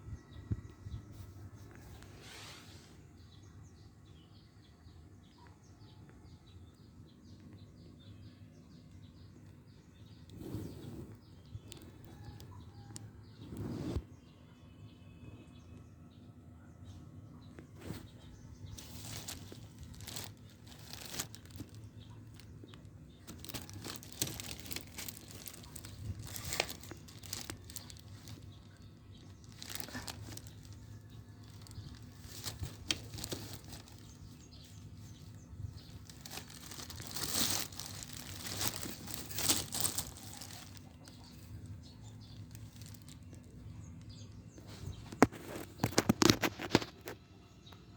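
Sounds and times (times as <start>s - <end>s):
packaging crinkling and rustling: 17.8s - 47.2s.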